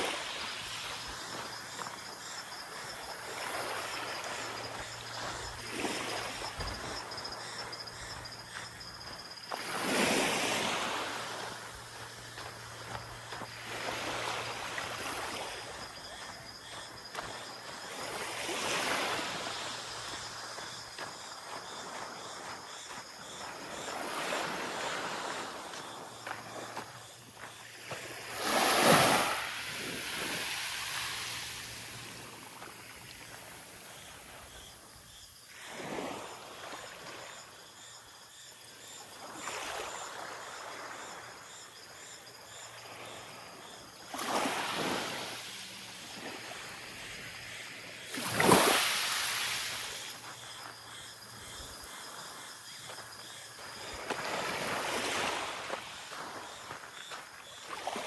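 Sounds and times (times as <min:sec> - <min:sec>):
surf hiss: 0:00.0 - 0:20.6, 0:27.6 - 0:34.5, 0:44.1 - 0:57.2
small waves breaking on sand: 0:00.0 - 0:58.0.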